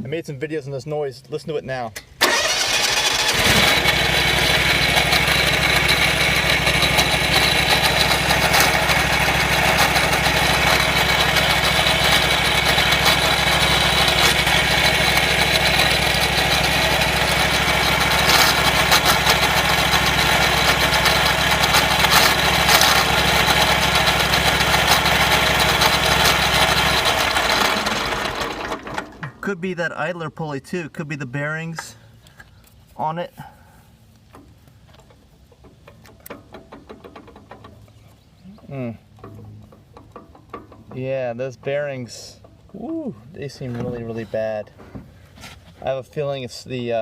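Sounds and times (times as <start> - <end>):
mower engine running: 2.2 - 29.4.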